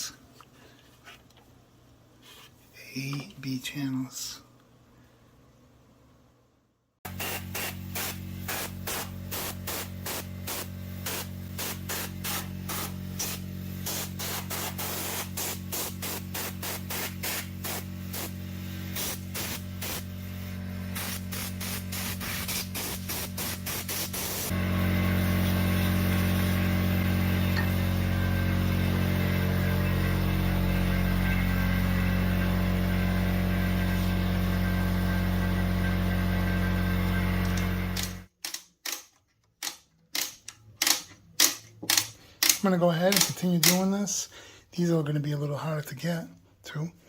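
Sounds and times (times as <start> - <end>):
electric air blower running: 7.1 - 38.3.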